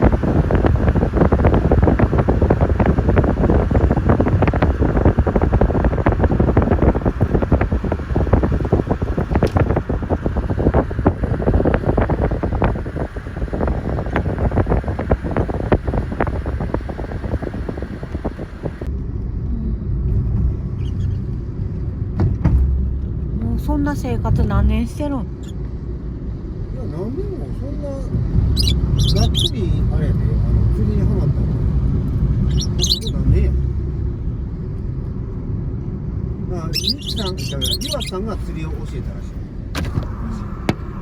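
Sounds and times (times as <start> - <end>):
wind buffeting microphone: 0.0 - 18.9, 28.1 - 34.0, 36.6 - 38.8
car road rumble: 0.0 - 27.1, 28.0 - 41.0.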